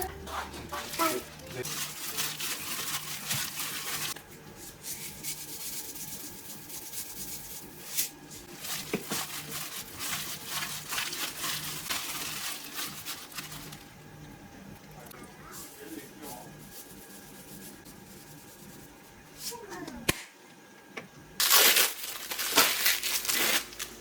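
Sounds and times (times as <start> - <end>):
rubbing and scraping strokes: 0.0 - 13.8, 15.7 - 19.2.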